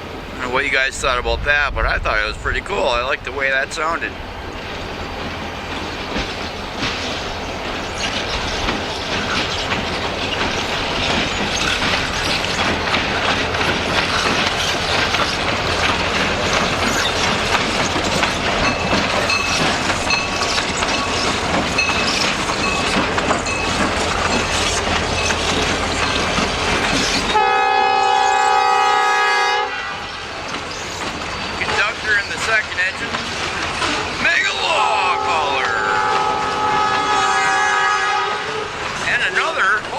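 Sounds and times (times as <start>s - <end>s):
freight train wheels clacking: 2.7s - 39.9s
train horn chord: 27.3s - 30.1s, 35.0s - 38.7s.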